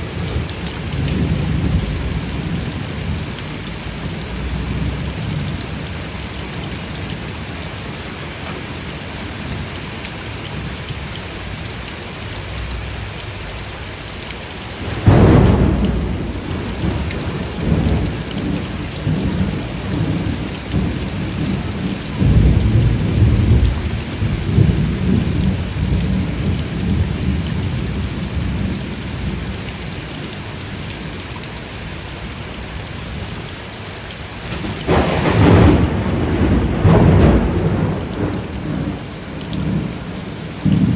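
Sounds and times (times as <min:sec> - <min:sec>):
low thunder rumbling: 0:00.0 - 0:09.7, 0:14.8 - 0:29.6, 0:34.4 - 0:40.9
steady rain: 0:00.0 - 0:40.9
thunderclap: 0:14.8 - 0:27.4, 0:34.4 - 0:40.9.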